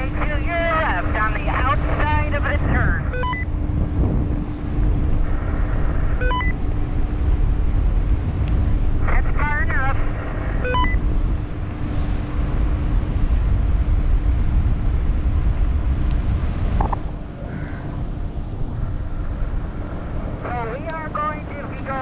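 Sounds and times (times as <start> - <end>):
faint steady hum: 0.0 - 22.0
wind buffeting microphone: 0.0 - 22.0
short beep: 3.1 - 3.5, 6.2 - 6.6, 10.6 - 11.0.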